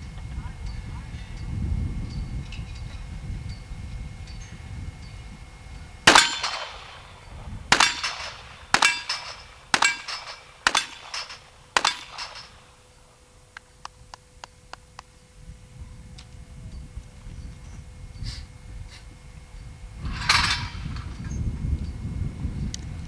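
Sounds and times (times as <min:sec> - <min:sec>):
metallic ringing: 0:00.0 - 0:13.4, 0:19.5 - 0:22.1
revolver shots: 0:06.1 - 0:12.8.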